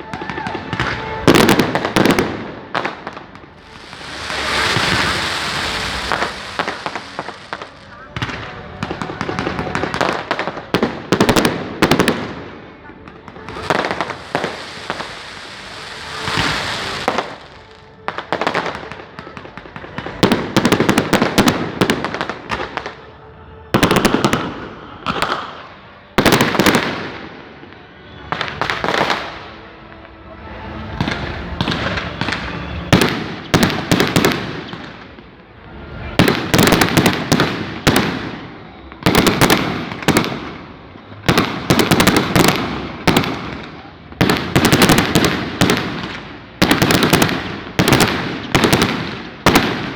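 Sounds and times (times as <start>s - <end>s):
firecrackers bursting: 0.0s - 23.2s, 23.8s - 49.9s.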